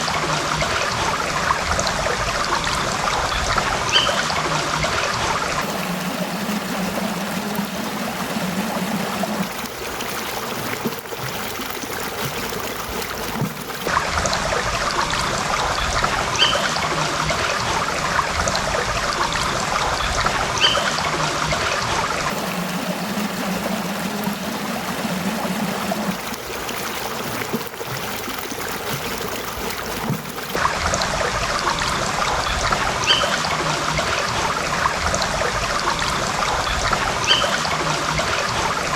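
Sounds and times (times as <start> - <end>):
stream babbling over rocks: 5.6 - 14.0, 22.2 - 35.8.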